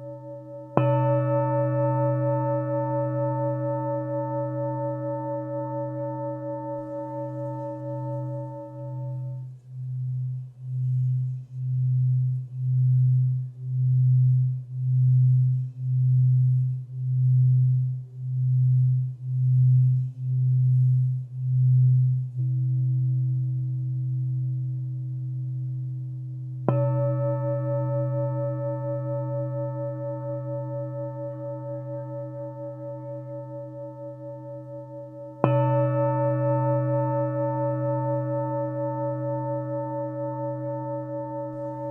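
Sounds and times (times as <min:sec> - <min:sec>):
singing bowl struck: 0:00.0 - 0:10.2, 0:26.6 - 0:41.9
singing bowl deep pulsing hum: 0:00.0 - 0:41.9
singing bowl high ringing: 0:00.0 - 0:41.9.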